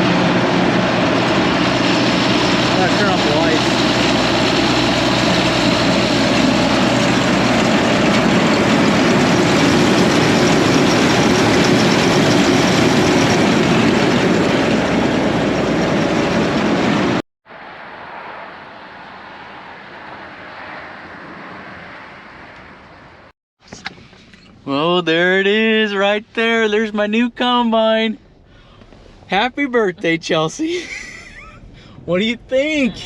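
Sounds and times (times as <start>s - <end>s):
combine harvester machinery din: 0.0s - 17.2s.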